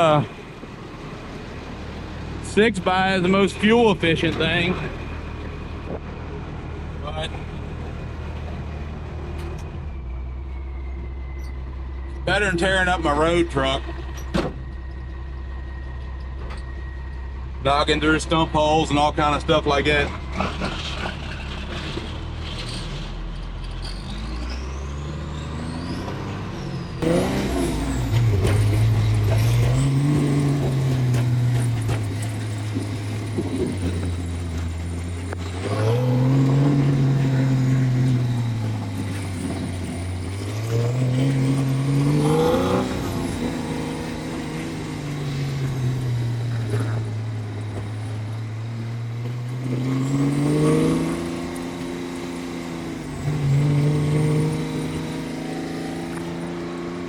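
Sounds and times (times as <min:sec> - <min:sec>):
truck diesel engine revving: 0:16.8 - 0:57.0.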